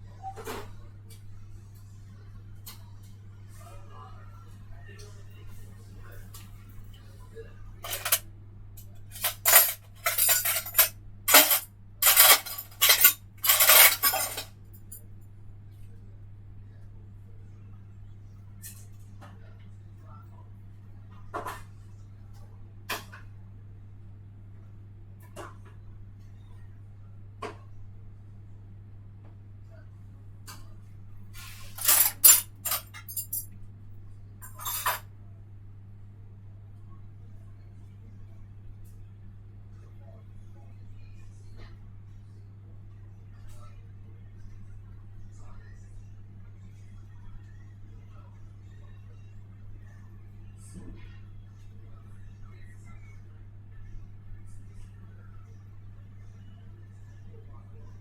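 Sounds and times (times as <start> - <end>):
dishes clattering: 7.8 - 8.2, 9.1 - 14.5, 31.7 - 33.5.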